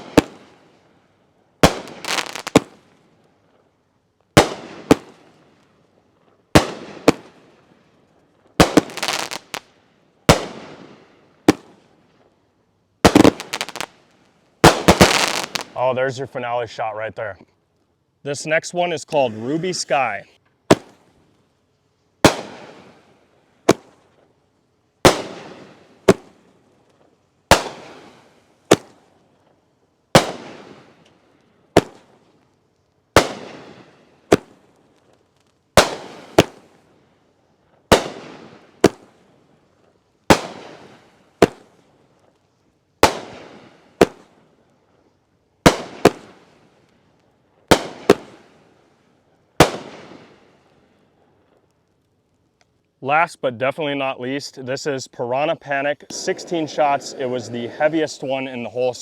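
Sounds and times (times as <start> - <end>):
firework shots banging: 0.0 - 0.6, 1.6 - 2.8, 4.4 - 5.3, 6.5 - 7.4, 8.6 - 9.6, 10.3 - 11.8, 13.0 - 13.9, 14.6 - 15.8, 20.7 - 21.1, 22.2 - 22.9, 23.6 - 24.0, 25.0 - 26.4, 27.5 - 29.1, 30.1 - 31.0, 31.8 - 32.2, 33.2 - 34.6, 35.8 - 36.8, 37.9 - 39.2, 40.3 - 41.8, 43.0 - 44.4, 45.6 - 46.5, 47.7 - 48.4, 49.6 - 50.4, 56.0 - 58.7
short firework cracks: 0.0 - 0.8, 1.6 - 3.1, 4.3 - 5.7, 6.5 - 11.9, 13.0 - 15.8, 20.7 - 21.2, 22.2 - 24.3, 25.0 - 29.2, 30.1 - 36.9, 37.8 - 44.5, 45.6 - 48.8, 49.5 - 52.0.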